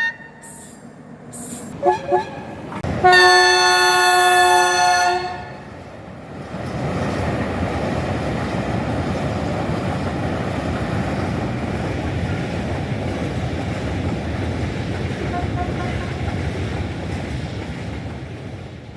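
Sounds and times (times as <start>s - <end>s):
train horn: 0.0s - 0.8s, 1.7s - 5.7s, 15.2s - 16.4s
train rumbling past: 0.0s - 18.9s.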